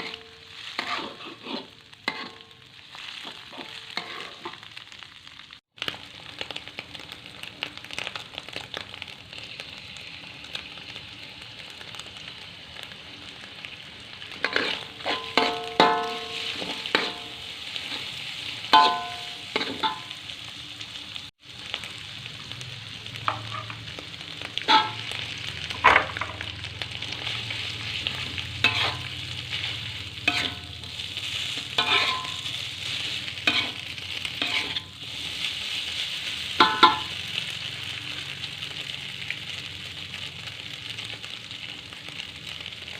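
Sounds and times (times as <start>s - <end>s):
food sizzling in oil: 0.0s - 42.9s
spatula clinking against pan: 18.7s - 19.2s.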